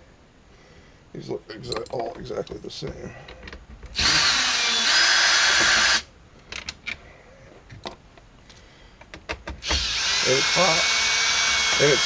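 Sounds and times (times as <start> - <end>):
cordless drill whining: 4.0 - 6.1, 9.6 - 12.0.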